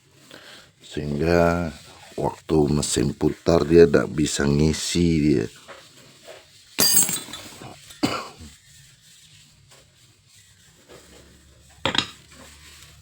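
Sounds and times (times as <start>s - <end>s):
metal parts clinking and rattling: 6.8s - 7.6s.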